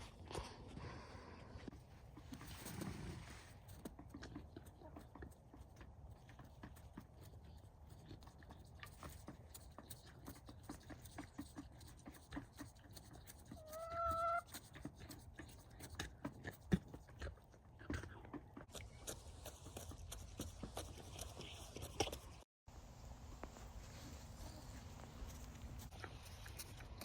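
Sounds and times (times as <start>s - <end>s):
farm animal call: 13.5s - 14.6s
faint clicking and shuffling: 17.8s - 27.0s.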